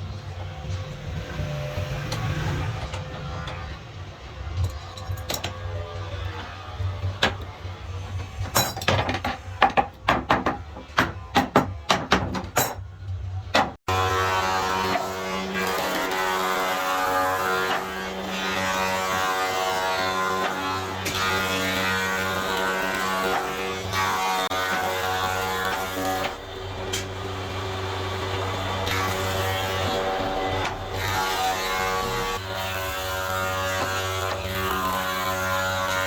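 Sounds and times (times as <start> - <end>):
motor drone: 0.0 - 4.7, 20.4 - 36.0.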